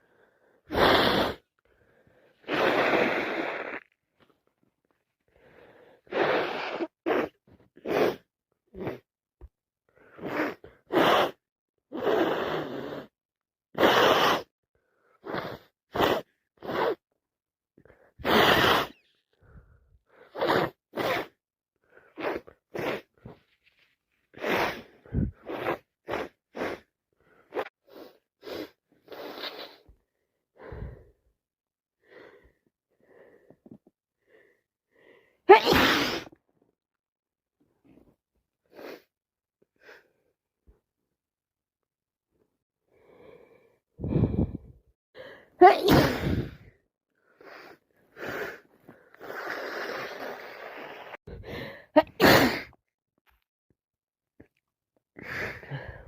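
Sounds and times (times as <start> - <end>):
short sniffs: 0.7 - 1.5, 2.4 - 3.9, 5.6 - 9.0, 10.1 - 13.1, 13.8 - 14.5, 15.2 - 17.0, 18.2 - 19.2, 20.1 - 30.0, 35.6 - 36.4, 47.4 - 52.8
woman sneezing: 35.5 - 36.4, 45.6 - 46.6, 52.0 - 52.8.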